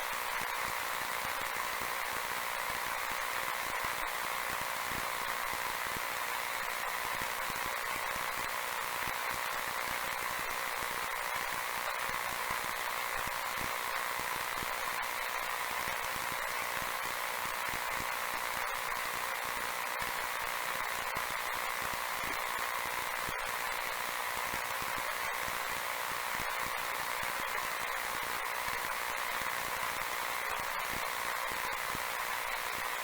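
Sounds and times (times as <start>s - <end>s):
static hiss with crackle: 0.0s - 33.0s.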